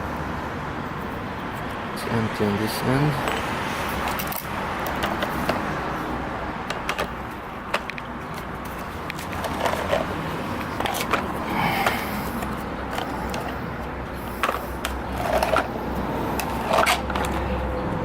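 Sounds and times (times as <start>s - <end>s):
tools clicking and knocking: 3.1s - 5.8s, 6.6s - 17.4s
tools scraping and rattling: 3.1s - 17.6s.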